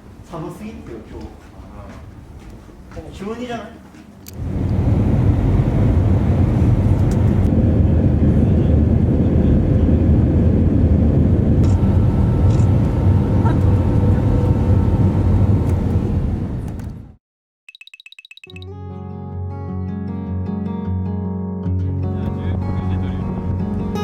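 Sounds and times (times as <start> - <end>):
vehicle rumble in motion: 4.3 - 17.2.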